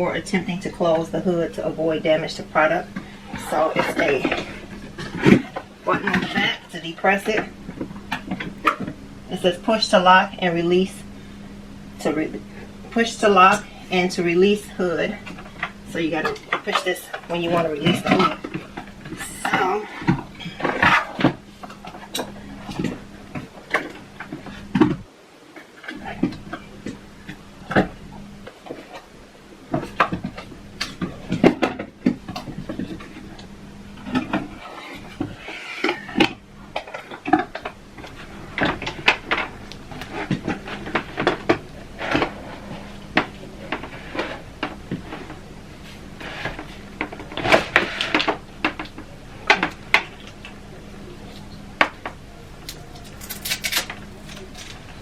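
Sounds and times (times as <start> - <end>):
faint steady hum: 0.0 - 55.0.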